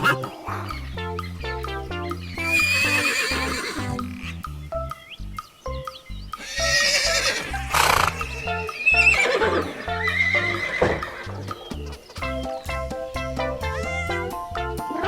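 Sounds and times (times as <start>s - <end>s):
background music: 0.0s - 15.0s
horse whinnying: 2.4s - 4.3s, 6.4s - 11.4s.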